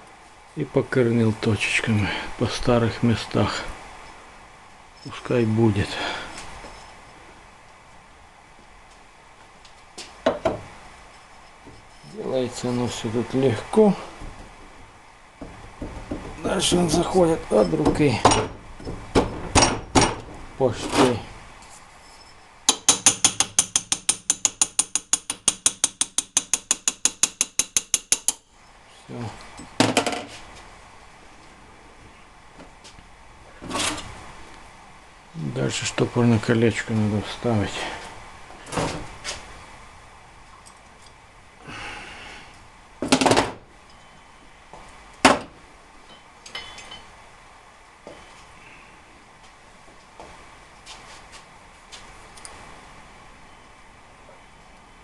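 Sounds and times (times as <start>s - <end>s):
ratchet wrench clicking: 22.7s - 28.4s
light metallic clinks: 43.8s - 44.2s, 46.0s - 47.1s.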